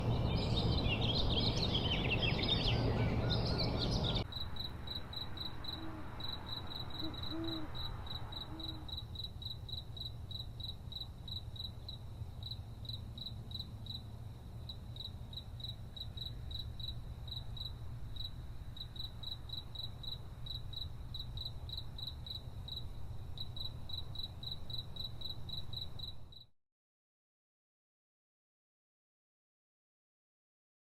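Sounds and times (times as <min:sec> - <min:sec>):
crickets chirping: 0:00.1 - 0:26.5.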